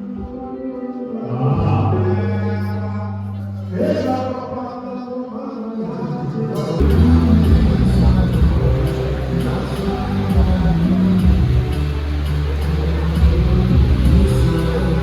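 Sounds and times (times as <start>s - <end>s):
choir singing sustained notes: 6.7s - 15.0s.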